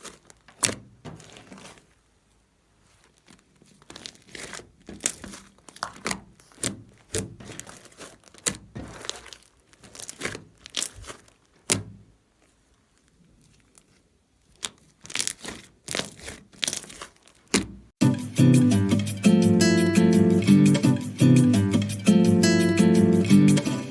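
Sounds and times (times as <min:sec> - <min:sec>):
strummed guitar music: 0:18.0 - 0:23.9.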